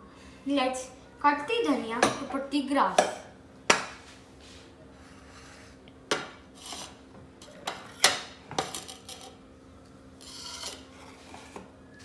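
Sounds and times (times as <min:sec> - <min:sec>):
knife scraping: 0:10.2 - 0:11.5.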